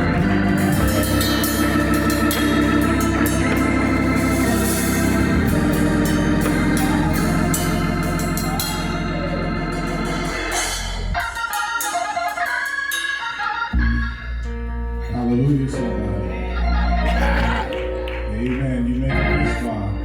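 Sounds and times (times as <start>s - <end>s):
deep organ bass: 0.0s - 11.6s, 13.6s - 20.0s
organ playing chords: 0.0s - 20.0s.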